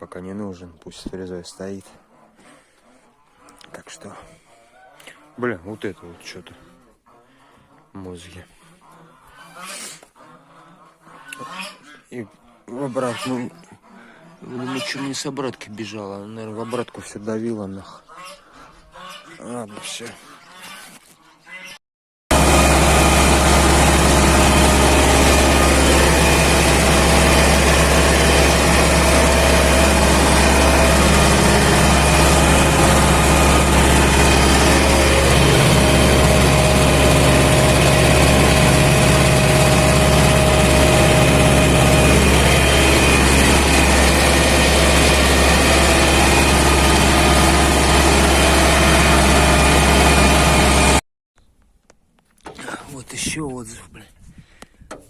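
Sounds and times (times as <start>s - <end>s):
tractor diesel engine running: 22.3s - 51.0s.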